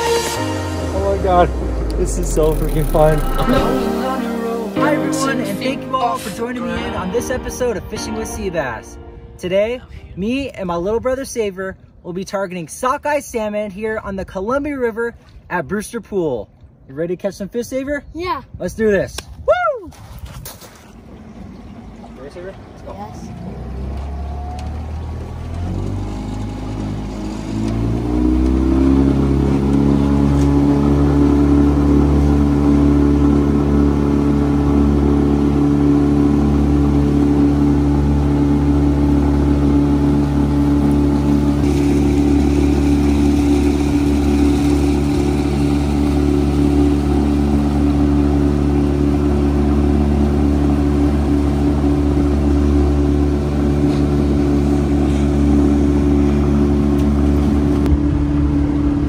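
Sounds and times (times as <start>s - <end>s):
outboard motor running at high speed: 0.0s - 6.5s, 20.8s - 59.0s.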